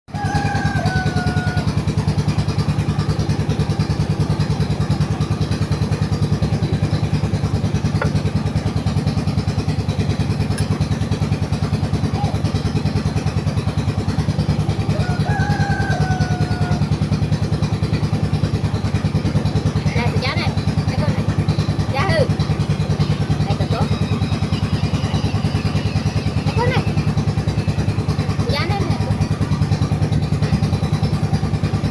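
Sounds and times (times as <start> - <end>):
engine throbbing: 0.1 - 31.9
falling whistle-like tone: 24.4 - 26.4.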